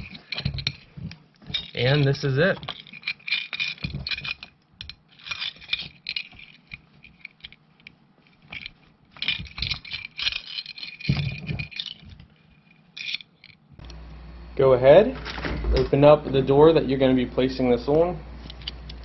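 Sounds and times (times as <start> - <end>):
metal lock parts clinking: 0.0 - 13.7, 18.4 - 19.0.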